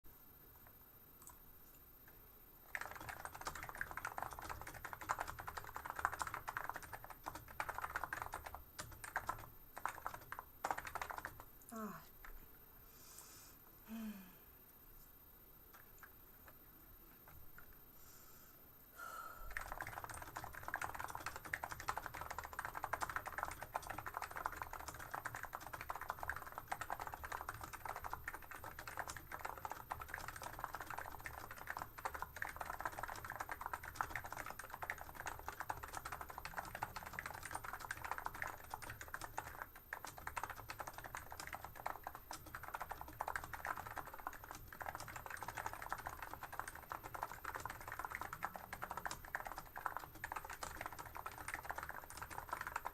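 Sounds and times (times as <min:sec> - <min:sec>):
fast keyboard typing: 0:02.6 - 0:11.5, 0:19.5 - 0:52.9.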